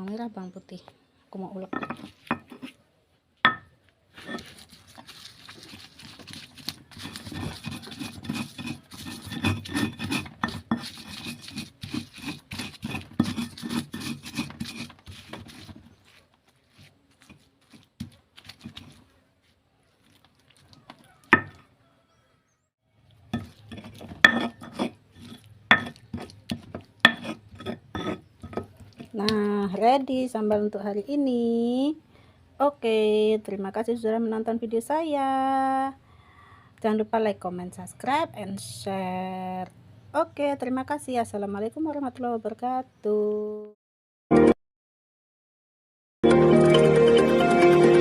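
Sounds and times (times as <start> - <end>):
pestle grinding in mortar: 1.7 - 2.7, 3.5 - 19.1, 20.0 - 21.7, 23.2 - 29.5
pestle knocking: 6.9 - 15.8, 21.3 - 21.6, 23.4 - 29.2.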